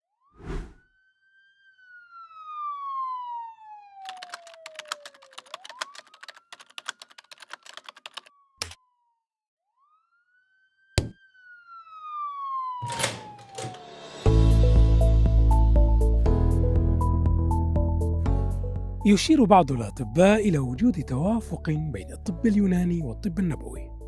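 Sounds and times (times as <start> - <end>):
rapid clicking: 4.1 - 8.8
music: 13.8 - 24.0.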